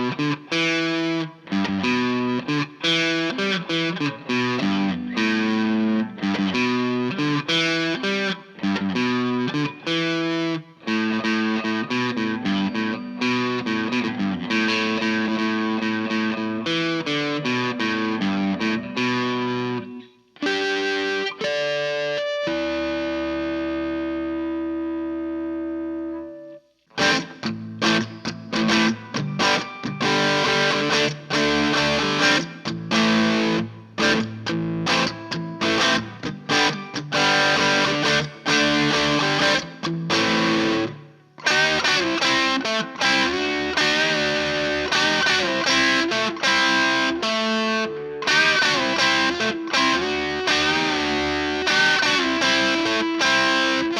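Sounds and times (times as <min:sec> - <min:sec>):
electric guitar with reverb: 0:00.0 - 0:53.9.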